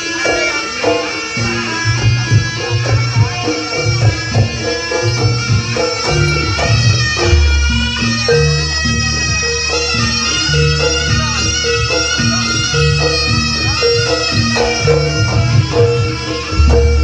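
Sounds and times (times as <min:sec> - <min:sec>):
drum strokes: 0:00.0 - 0:17.0
reedy shawm melody: 0:00.0 - 0:17.0
low sustained notes: 0:15.8 - 0:17.0.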